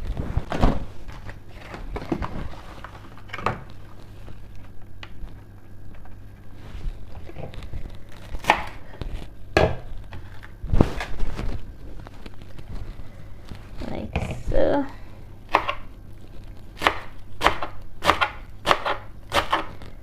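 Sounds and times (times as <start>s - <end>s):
knife slicing herbs: 16.8s - 19.8s.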